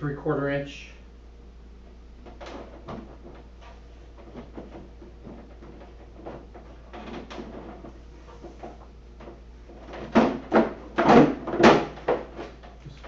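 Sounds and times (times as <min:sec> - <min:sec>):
plastic hood handling knocks and scrapes: 0:02.2 - 0:13.0.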